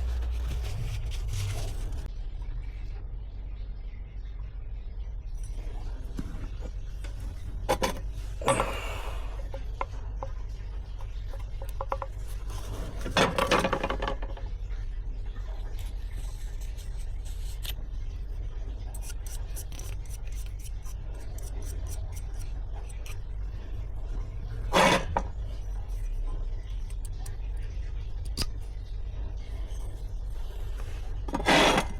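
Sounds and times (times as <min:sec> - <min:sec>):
scraping and rubbing on metal: 0:00.0 - 0:02.1, 0:10.8 - 0:14.4, 0:18.8 - 0:26.2, 0:29.4 - 0:31.9
steady low hum: 0:00.0 - 0:31.9.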